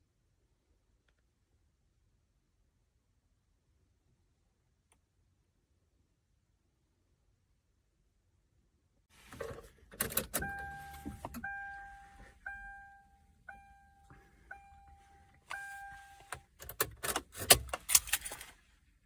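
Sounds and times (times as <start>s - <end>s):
car warning chime dinging: 9.4s - 17.2s.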